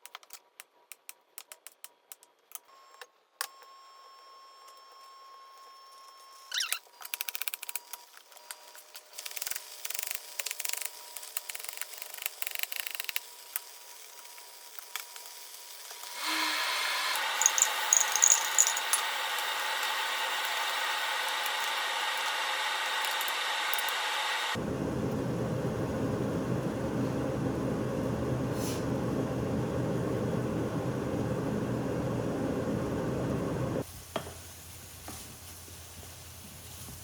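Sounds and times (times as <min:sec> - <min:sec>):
steady mechanical hum: 0:12.8 - 0:34.4.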